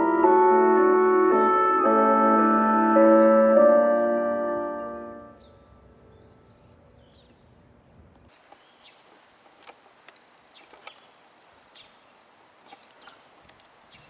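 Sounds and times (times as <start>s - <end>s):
loudspeaker chime: 0.0s - 5.4s
birds chirping: 0.0s - 9.6s, 10.4s - 14.0s.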